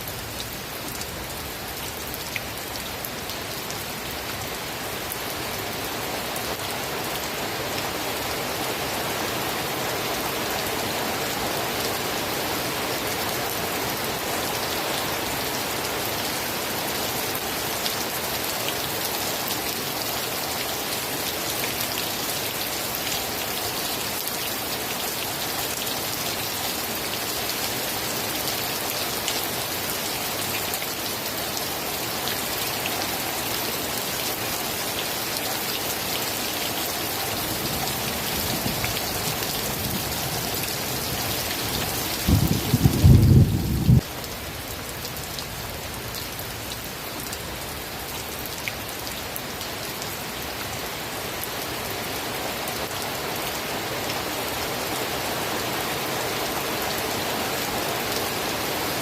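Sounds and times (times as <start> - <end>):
steady rain falling: 0.0 - 59.0
low rumble of thunder: 42.2 - 44.1.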